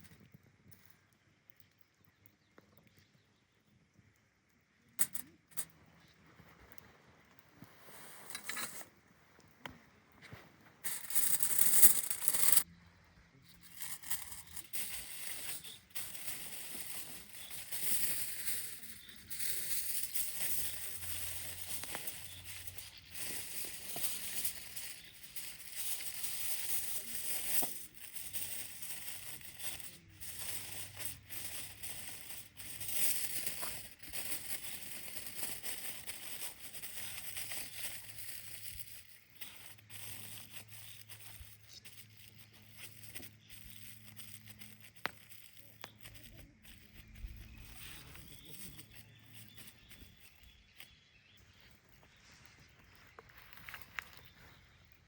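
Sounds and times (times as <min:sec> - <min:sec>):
material rustling and crinkling: 0:10.2 - 0:12.7, 0:13.7 - 0:54.7
small clicks: 0:13.7 - 0:51.0.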